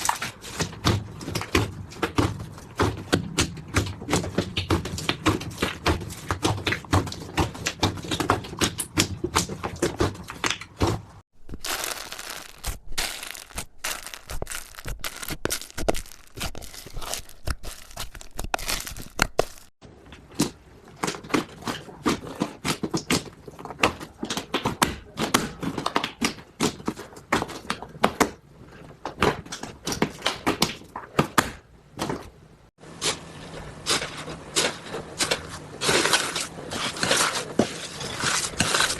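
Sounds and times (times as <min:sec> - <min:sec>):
slime squished by hand: 0:11.4 - 0:19.7.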